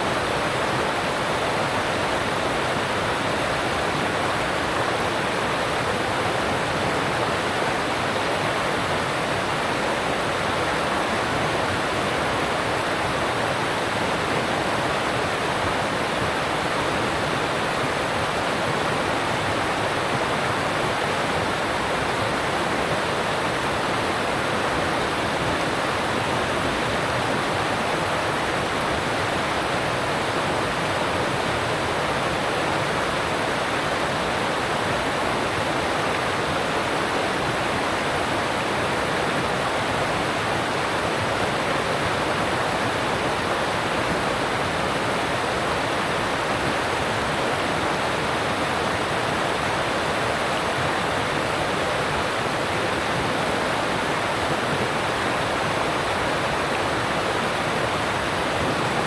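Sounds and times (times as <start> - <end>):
stream rushing over rocks: 0.0 - 59.0.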